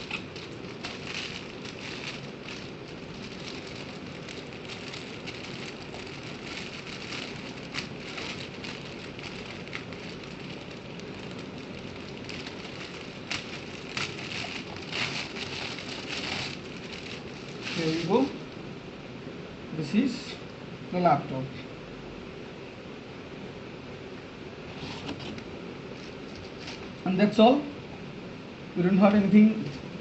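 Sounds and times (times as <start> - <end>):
packaging crackling and rustling: 0.0 - 18.6, 25.0 - 27.0
steady hiss: 0.0 - 21.7.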